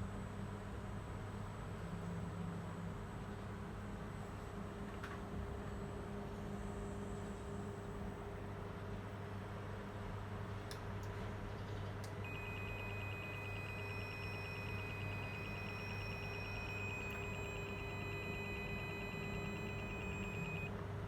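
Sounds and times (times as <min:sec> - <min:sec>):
low electrical hum: 0:01.0 - 0:21.0.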